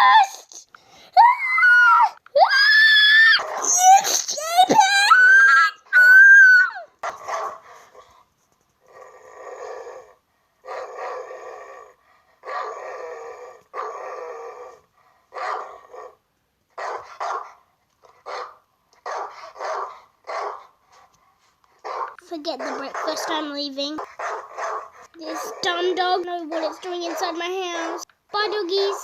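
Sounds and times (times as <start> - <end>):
shrill high-pitched cry: 0.0 - 0.6, 1.2 - 7.0
dog barking: 7.0 - 7.7, 12.4 - 12.8, 15.3 - 16.2, 16.8 - 17.6, 18.2 - 20.7, 21.8 - 29.0
dog growling: 8.8 - 16.2, 21.8 - 23.4, 24.0 - 28.0.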